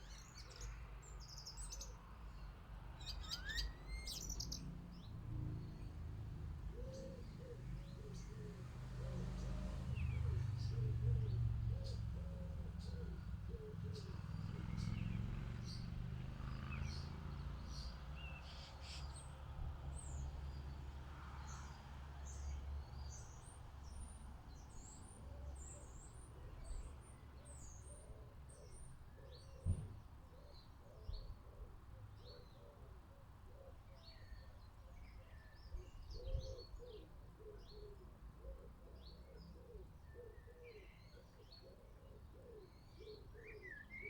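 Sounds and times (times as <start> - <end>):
small birds chirping: 0.0 - 6.0, 6.6 - 20.8, 21.4 - 44.0
repeated cooing call: 6.7 - 15.0.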